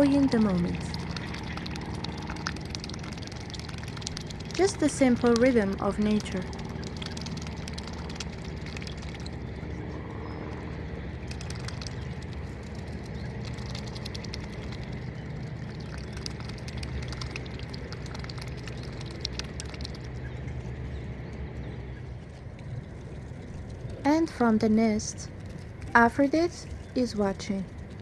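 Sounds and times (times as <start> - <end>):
small clicks and splashes: 0.0 - 9.5, 11.3 - 20.7, 25.2 - 28.0
faint water sounds: 0.0 - 28.0
low rumble: 0.0 - 28.0.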